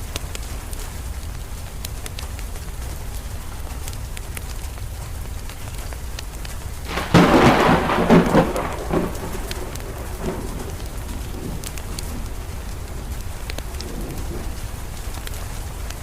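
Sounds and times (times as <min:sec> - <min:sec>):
crackling wood fire: 0:00.0 - 0:16.0
steady rain: 0:00.0 - 0:16.0
thunder cracking and rumbling: 0:06.8 - 0:16.0.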